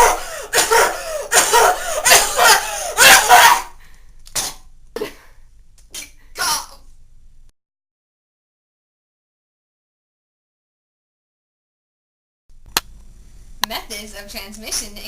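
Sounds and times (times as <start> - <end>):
person coughing: 0.0 - 3.7, 4.4 - 6.7.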